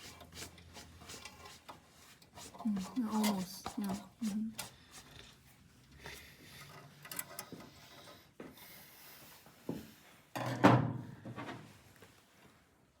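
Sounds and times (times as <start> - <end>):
hands rubbing and clicking parts: 0.0 - 8.2.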